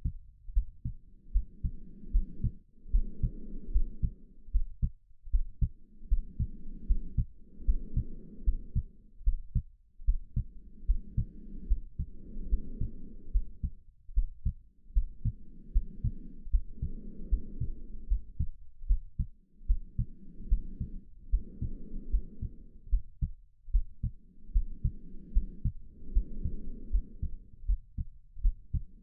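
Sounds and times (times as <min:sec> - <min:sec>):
heartbeat thumps: 0:00.0 - 0:29.0
soft breathing: 0:00.0 - 0:29.0.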